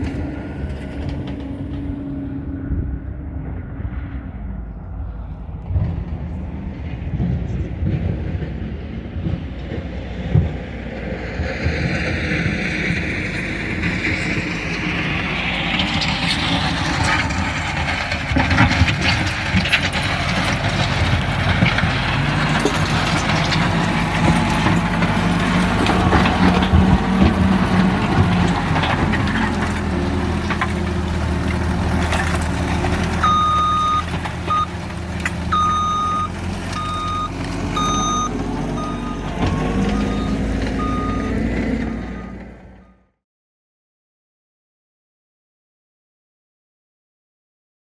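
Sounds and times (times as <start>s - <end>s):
heavy machinery running: 0.0s - 42.9s
knocks and clatter: 15.7s - 41.8s
reversing alarm beeping: 33.2s - 34.8s, 35.5s - 43.0s.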